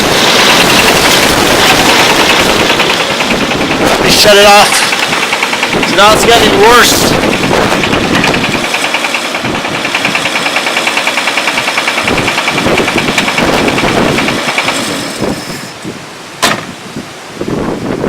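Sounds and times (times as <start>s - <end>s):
car engine with rod knock: 7.1s - 15.2s, 16.4s - 16.8s.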